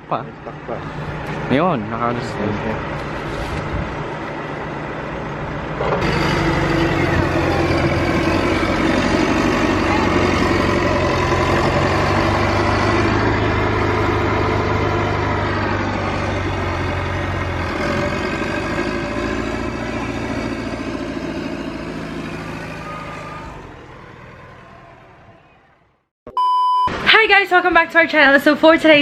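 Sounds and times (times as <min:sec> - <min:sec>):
motor vehicle engine running: 0:00.0 - 0:26.0.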